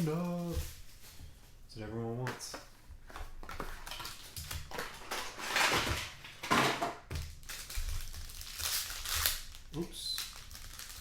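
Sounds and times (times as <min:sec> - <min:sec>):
plastic wrap and cardboard tearing: 0:03.5 - 0:11.0.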